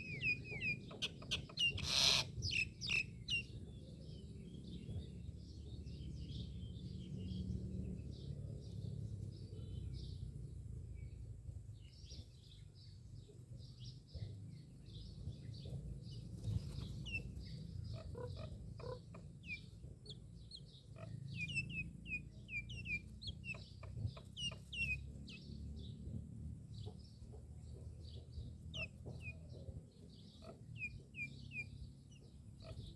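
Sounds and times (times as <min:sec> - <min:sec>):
birds chirping and whistling: 0:00.0 - 0:08.2, 0:13.8 - 0:26.0, 0:28.0 - 0:32.9.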